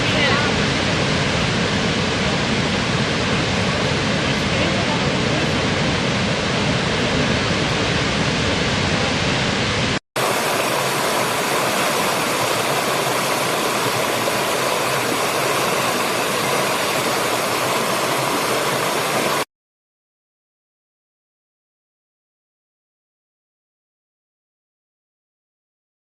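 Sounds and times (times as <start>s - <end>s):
waterfall rushing: 0.0s - 19.5s.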